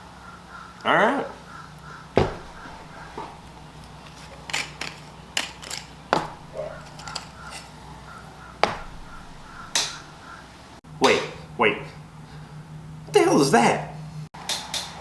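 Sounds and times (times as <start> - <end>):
handling clicks and knocks: 2.2 - 7.8, 8.6 - 10.2.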